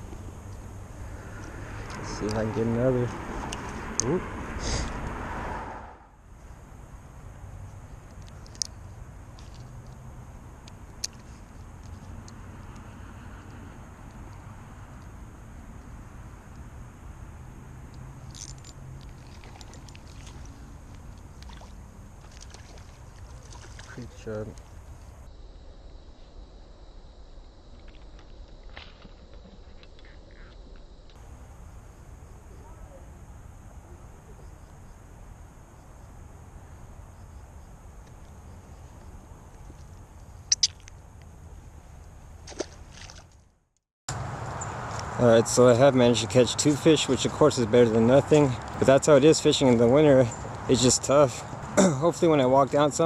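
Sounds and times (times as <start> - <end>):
low outdoor rumble: 0.0 - 43.2.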